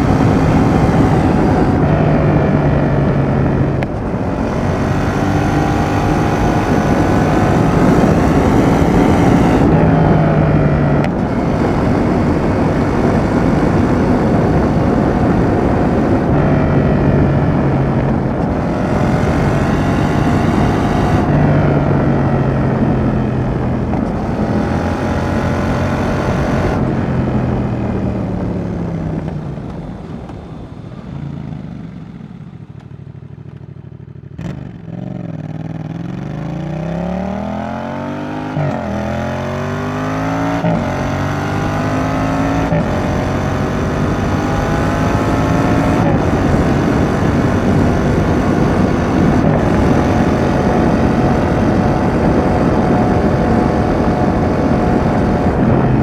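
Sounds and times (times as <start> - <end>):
wind rushing: 0.0 - 27.8, 39.6 - 56.0
motorcycle engine revving: 0.0 - 56.0.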